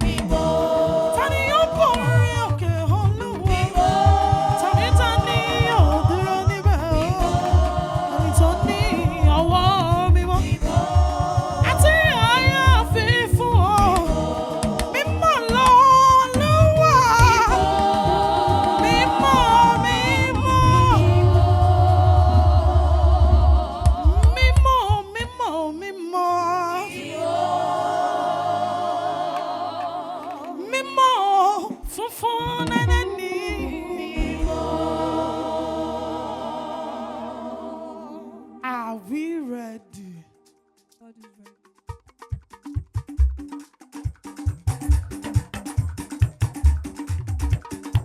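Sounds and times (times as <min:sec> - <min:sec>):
sustained chords: 0:00.0 - 0:24.8
voices singing gospel: 0:00.0 - 0:25.2, 0:26.5 - 0:40.0.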